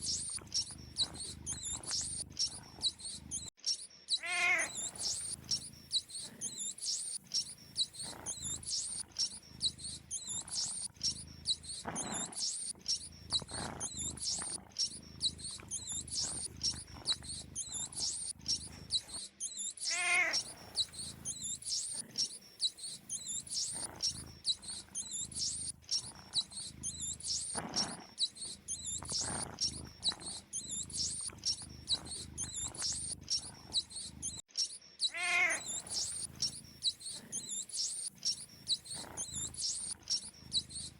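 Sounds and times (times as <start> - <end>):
low pulsing cat purr: 0.0 - 3.5, 4.7 - 19.2, 20.4 - 34.4, 35.6 - 40.9
mice squeaking: 0.0 - 40.9
falling cat call: 4.2 - 4.7, 35.1 - 35.6.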